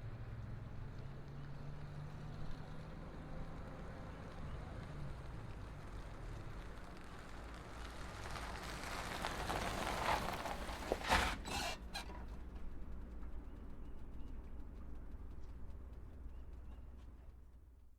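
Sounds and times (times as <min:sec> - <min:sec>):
vehicle engine rumbling: 0:00.2 - 0:17.9
brief rattles: 0:10.0 - 0:12.6.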